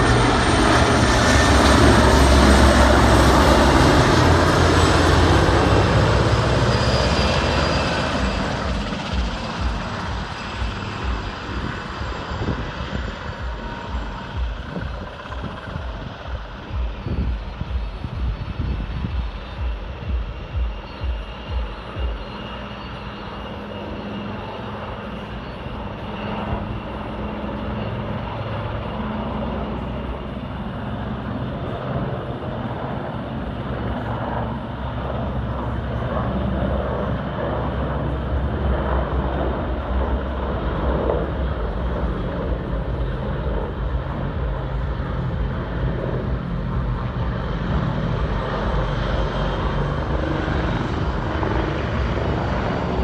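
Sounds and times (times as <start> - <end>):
faint high whine: 0.0 - 53.0
helicopter rotor and turbine: 0.0 - 53.0.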